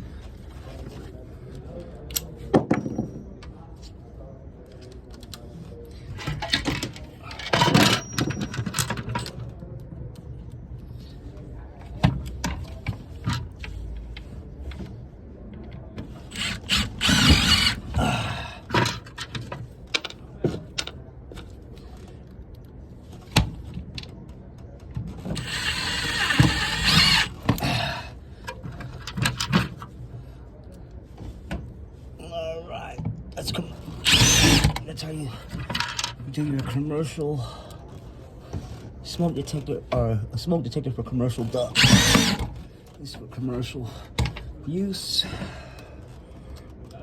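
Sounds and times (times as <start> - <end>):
tools and metal parts clicking: 6.2 - 9.5, 16.1 - 21.5, 25.2 - 27.8, 34.0 - 34.8, 41.7 - 42.5
power drill driving screws: 16.3 - 18.9, 25.4 - 27.9, 34.0 - 34.8, 41.7 - 42.5.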